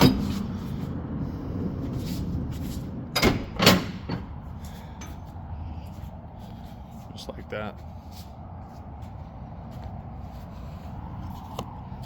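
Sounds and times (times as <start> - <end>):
sharp metal clunks: 0.0 - 0.4, 3.2 - 4.4.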